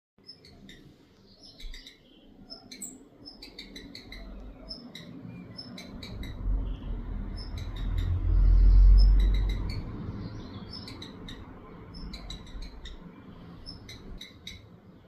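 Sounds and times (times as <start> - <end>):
low rumble: 5.6 - 13.0.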